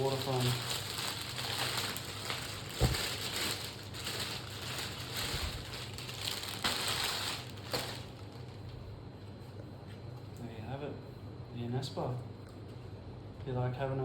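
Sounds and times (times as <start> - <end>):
packaging crinkling and rustling: 0.0 - 8.8.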